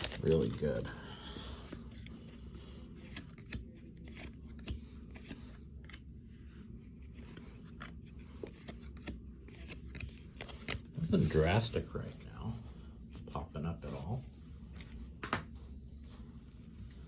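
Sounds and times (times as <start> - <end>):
low steady hum: 0.0 - 17.0
trading cards flipped by hand: 1.7 - 11.4, 14.6 - 15.6.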